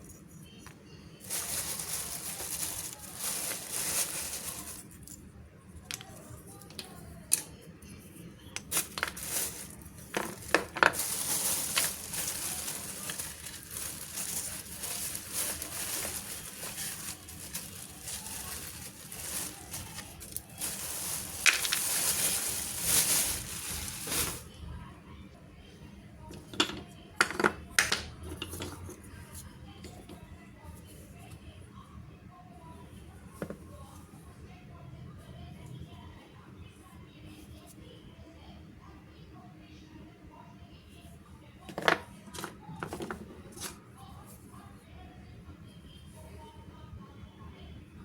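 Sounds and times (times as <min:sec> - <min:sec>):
packaging crinkling and tearing: 0:01.2 - 0:05.2, 0:08.6 - 0:24.5.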